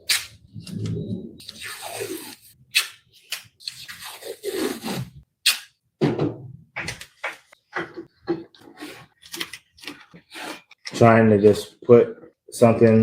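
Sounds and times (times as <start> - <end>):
knocks taps and rustles of handling: 6.0 - 11.0
scrape: 10.3 - 10.8.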